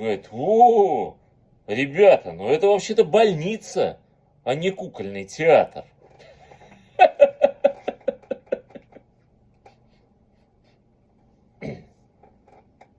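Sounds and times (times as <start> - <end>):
person laughing: 6.2 - 9.2.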